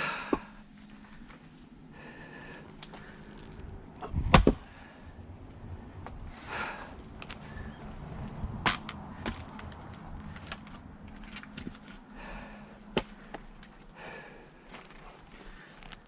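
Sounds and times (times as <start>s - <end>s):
heavy breathing: 0.0s - 3.7s, 6.2s - 7.9s, 12.0s - 16.0s.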